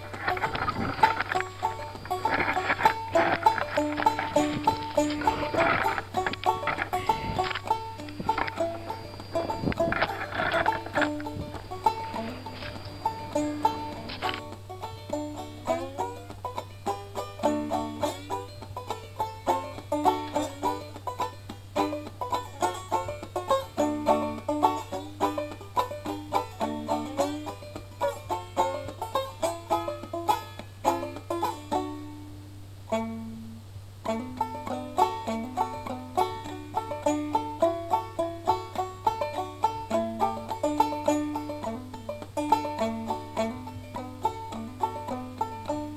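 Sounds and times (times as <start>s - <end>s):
bluegrass banjo picking: 0.0s - 45.9s
steady low hum: 0.0s - 45.9s.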